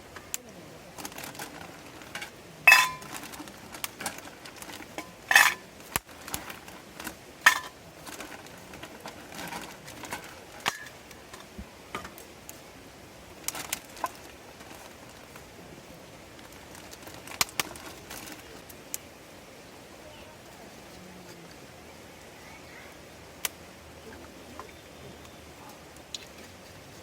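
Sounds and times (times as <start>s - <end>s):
metal cookware clinking: 2.1s - 3.2s, 5.0s - 5.6s, 7.4s - 7.8s, 10.6s - 11.0s
ringing metal clanks: 2.7s - 3.1s, 7.5s - 7.7s.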